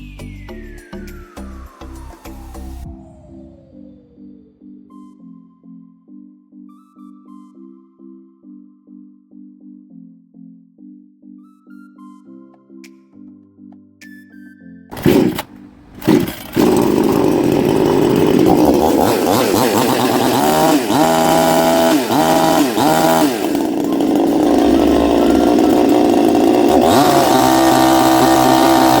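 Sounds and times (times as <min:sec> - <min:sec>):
chainsaw engine revving: 0:14.9 - 0:29.0
chainsaw pull-start: 0:14.9 - 0:29.0.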